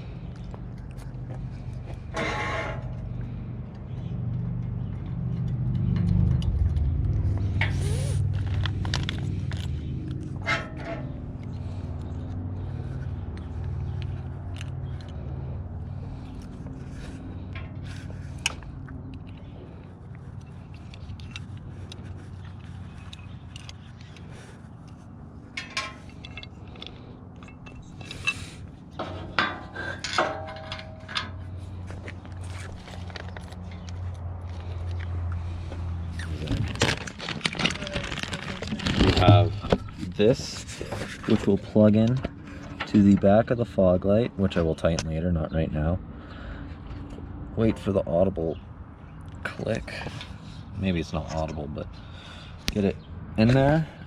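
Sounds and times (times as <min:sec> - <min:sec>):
low engine hum: 0:00.0 - 0:54.0
metal clinks and scrapes: 0:02.0 - 0:03.2, 0:05.0 - 0:11.8, 0:20.3 - 0:43.3.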